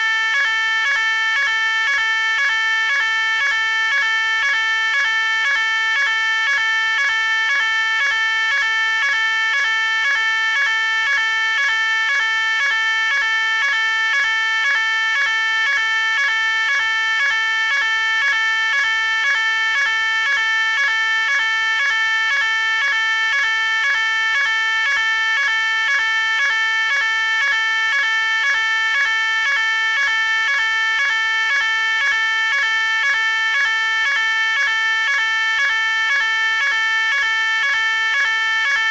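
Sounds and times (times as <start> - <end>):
electronic fire alarm pulsing: 0.0 - 38.9.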